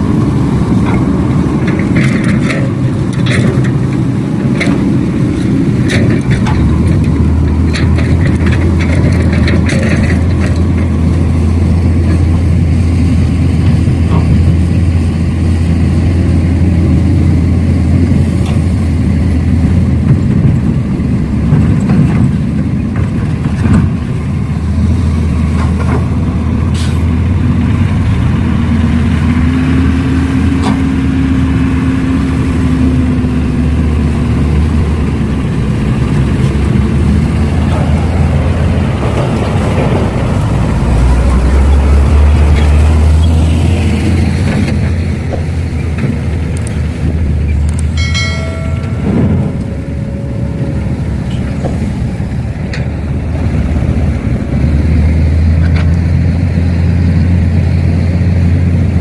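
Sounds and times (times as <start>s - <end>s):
low engine hum: 0.0s - 59.0s
higher motor whine: 27.2s - 59.0s.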